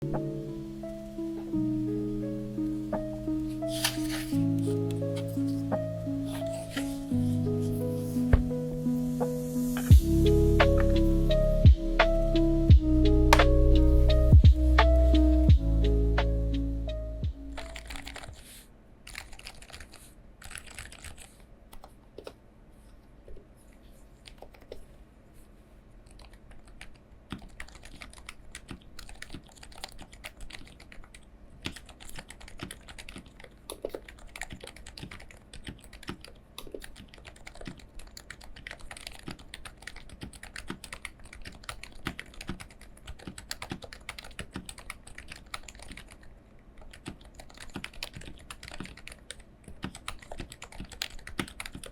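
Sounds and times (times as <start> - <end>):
keyboard typing: 3.0 - 8.6, 17.5 - 18.5, 19.1 - 22.4, 24.2 - 24.9, 26.0 - 51.9.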